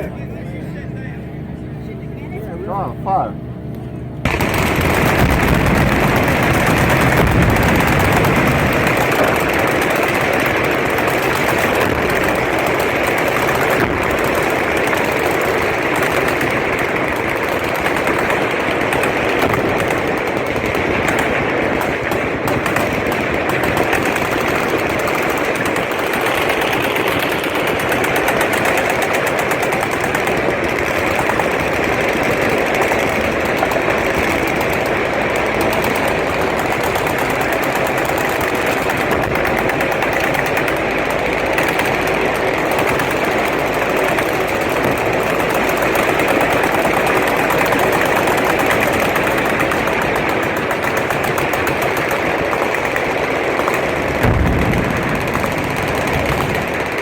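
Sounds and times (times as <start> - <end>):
automatic gunfire rattle: 4.3 - 57.0.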